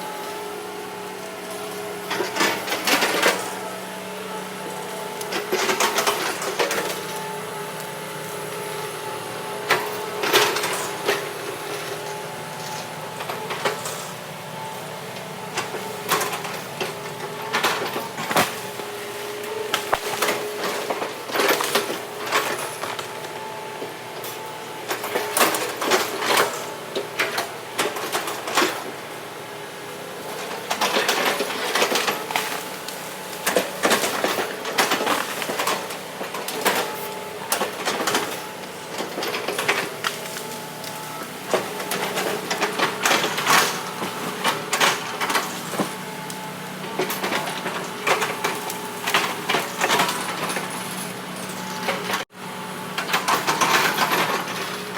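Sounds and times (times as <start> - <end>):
heavy machinery humming: 0.0 - 54.9.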